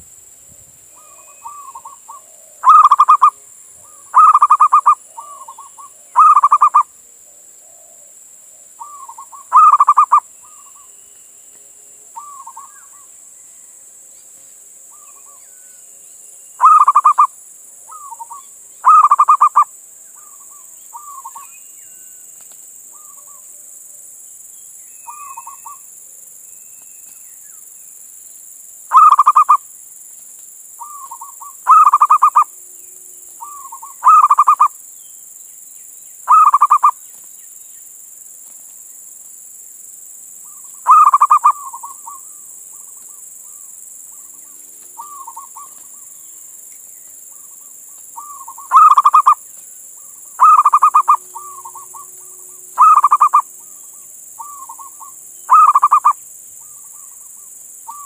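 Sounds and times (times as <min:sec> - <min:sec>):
dove cooing: 0:01.0 - 0:10.9, 0:16.6 - 0:17.3, 0:17.9 - 0:21.5, 0:28.9 - 0:29.6, 0:30.8 - 0:32.5, 0:33.4 - 0:34.7, 0:36.3 - 0:37.0, 0:40.5 - 0:43.6, 0:45.0 - 0:46.2, 0:48.2 - 0:49.4, 0:50.4 - 0:57.2.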